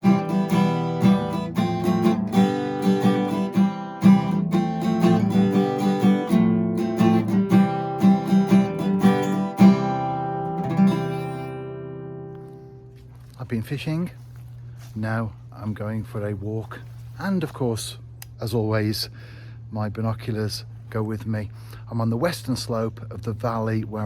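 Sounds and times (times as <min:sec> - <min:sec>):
acoustic guitar music: 0:00.0 - 0:15.6.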